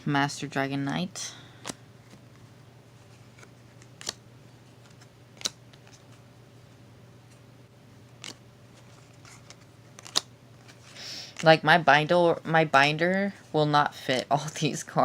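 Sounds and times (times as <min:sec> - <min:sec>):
faint low hum: 0:00.0 - 0:15.0
trading cards clicking: 0:03.8 - 0:04.2, 0:04.8 - 0:06.2, 0:09.2 - 0:10.3.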